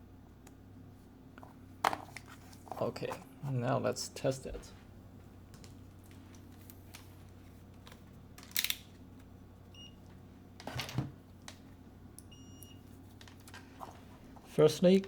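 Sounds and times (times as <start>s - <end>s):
multimeter beeping: 12.2s - 12.9s.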